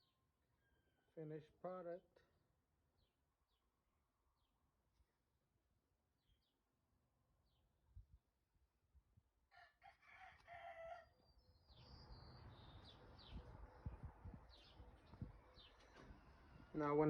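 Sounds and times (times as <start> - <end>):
rooster crowing faintly: 9.5 - 11.2.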